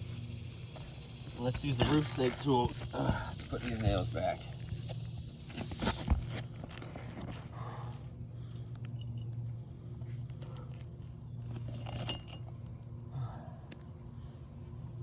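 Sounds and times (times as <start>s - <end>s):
steady low hum: 0.0s - 15.0s
nails clinking and jingling: 0.7s - 4.6s, 8.4s - 9.4s, 11.4s - 12.7s.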